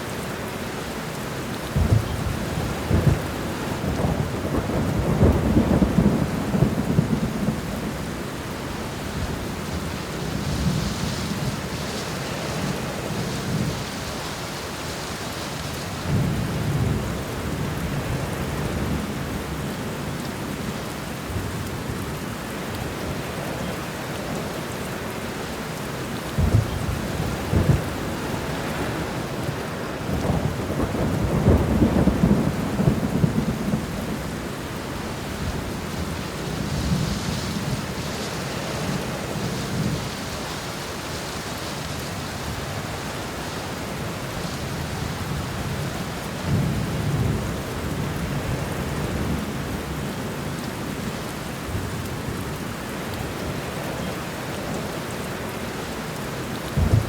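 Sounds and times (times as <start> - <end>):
rain pattering on a window: 0.0 - 57.0
thunder rumbling: 1.8 - 11.8, 26.3 - 40.9, 56.7 - 57.0.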